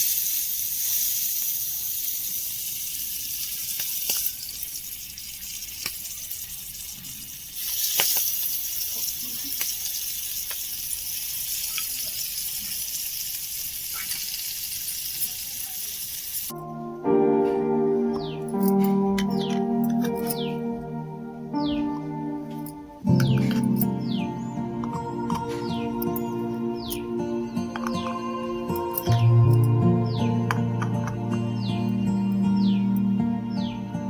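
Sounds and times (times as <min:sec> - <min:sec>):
food sizzling in hot oil: 0:00.0 - 0:16.6
oil popping and crackling: 0:00.0 - 0:16.6.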